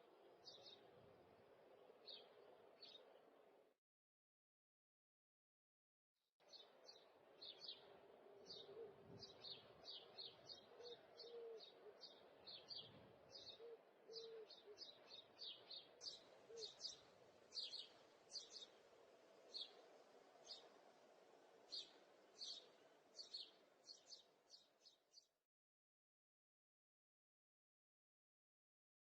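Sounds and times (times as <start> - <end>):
small birds chirping: 0.0 - 0.9, 6.5 - 25.3.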